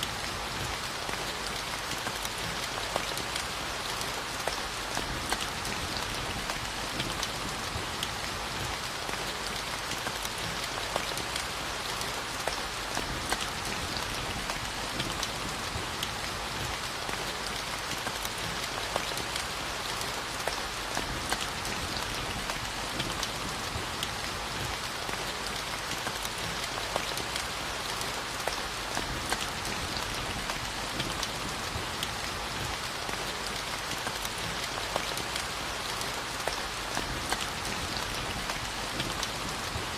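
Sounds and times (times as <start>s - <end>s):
raindrop ticks: 0.6s - 9.3s, 20.4s - 27.5s, 28.4s - 39.9s.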